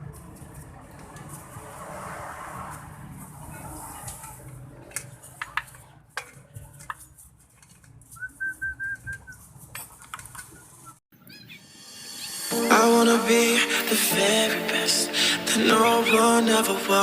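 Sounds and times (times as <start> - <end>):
bird chirping: 10.5 - 12.5, 15.6 - 16.7.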